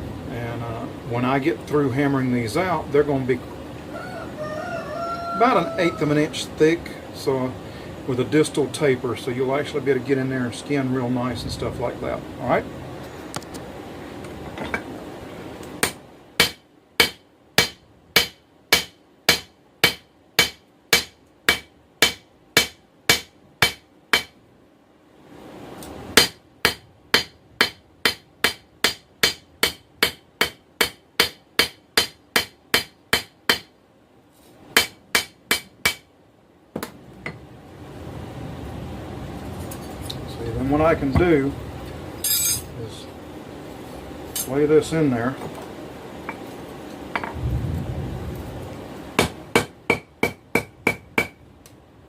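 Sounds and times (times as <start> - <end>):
hammer striking metal on an anvil: 15.8 - 24.4, 26.2 - 33.7, 34.8 - 36.1, 42.2 - 42.7, 49.2 - 51.4.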